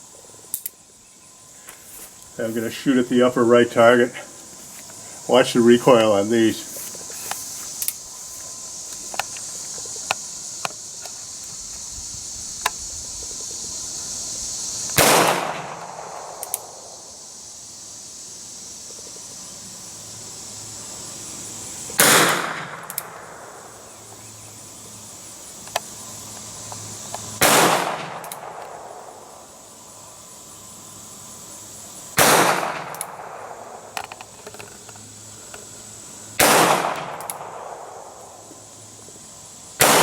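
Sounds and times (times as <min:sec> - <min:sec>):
sharp clicks: 0:00.5 - 0:00.8, 0:07.2 - 0:08.0, 0:16.2 - 0:16.7, 0:22.3 - 0:23.2, 0:26.7 - 0:28.8, 0:32.2 - 0:33.2, 0:36.4 - 0:37.5.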